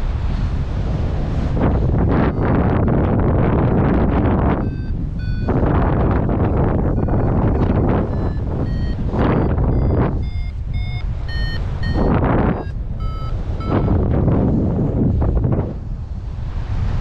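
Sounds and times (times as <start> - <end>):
wind gusting on microphone: 0.0 - 17.0
variometer short beeps: 2.1 - 14.1.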